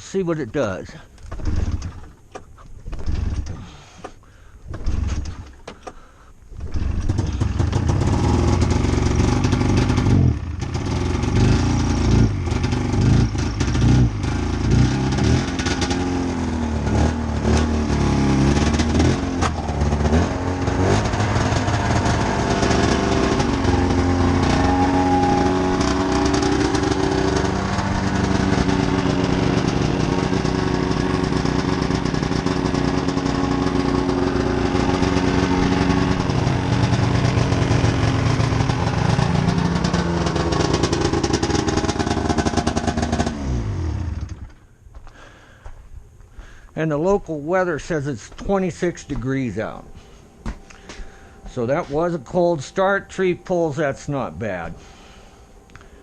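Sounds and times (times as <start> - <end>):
snowmobile engine revving and idling: 6.7 - 44.5.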